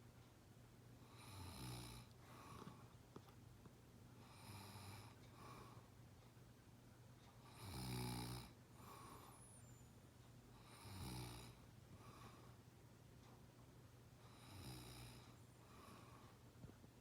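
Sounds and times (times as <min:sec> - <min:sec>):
heavy snoring: 0:01.1 - 0:02.6, 0:04.2 - 0:05.2, 0:07.5 - 0:09.3, 0:10.6 - 0:11.6, 0:14.2 - 0:16.2
soft breath out: 0:02.2 - 0:03.0, 0:04.2 - 0:05.9, 0:08.7 - 0:09.6, 0:11.9 - 0:12.6, 0:15.2 - 0:16.4.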